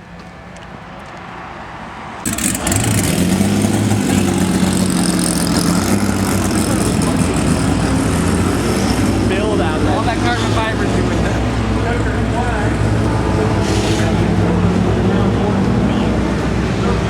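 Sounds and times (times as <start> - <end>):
car engine running: 2.3 - 17.0.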